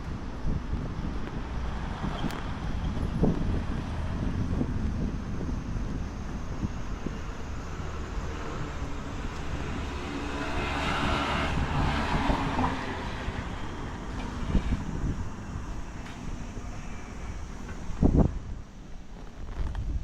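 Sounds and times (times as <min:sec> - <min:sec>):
wind rumble on microphone: 0:00.0 - 0:20.0
electric train passing: 0:03.6 - 0:19.1.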